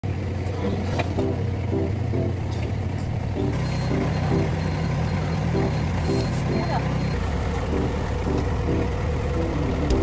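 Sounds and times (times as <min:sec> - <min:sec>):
engine running with low hum: 0:00.0 - 0:10.0
short pitched notes: 0:01.2 - 0:02.5.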